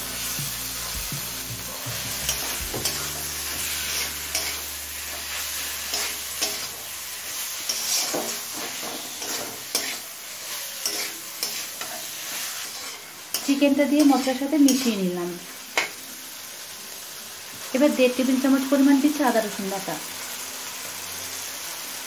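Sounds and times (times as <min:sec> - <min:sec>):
chicken sizzling in hot oil: 0:00.0 - 0:22.0
spatula scraping pan: 0:01.6 - 0:15.0.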